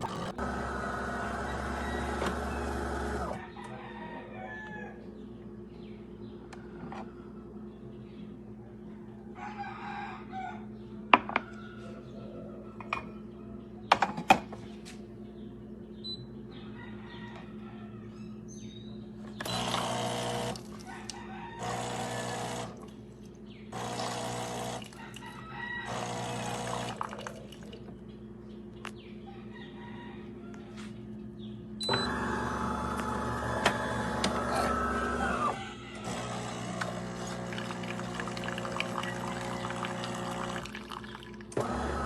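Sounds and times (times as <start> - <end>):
espresso machine humming: 0.0 - 3.4, 19.4 - 20.7, 21.6 - 22.8, 23.8 - 25.0, 25.8 - 27.2, 31.9 - 42.0
espresso machine hissing: 19.5 - 20.6, 23.8 - 24.8, 25.9 - 27.0, 32.0 - 40.8.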